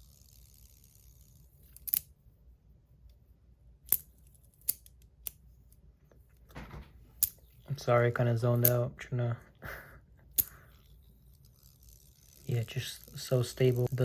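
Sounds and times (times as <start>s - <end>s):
fidget spinner metallic clicks: 0.0s - 2.1s, 3.8s - 5.4s, 8.5s - 8.8s, 10.3s - 14.0s.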